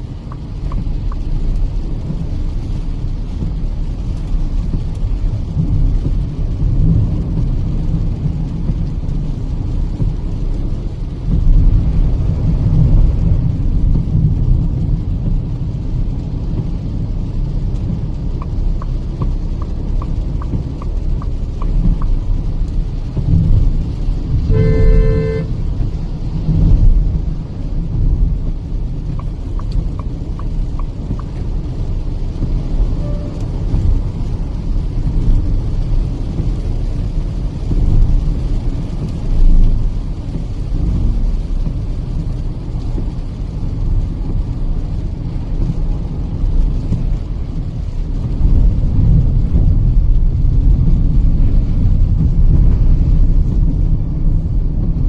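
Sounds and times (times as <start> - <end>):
road and engine rumble in car: 0.0 - 55.0
light regular ticks: 0.2 - 3.6, 17.7 - 23.3, 29.0 - 31.7
car horn honk: 24.4 - 25.6, 33.0 - 33.4.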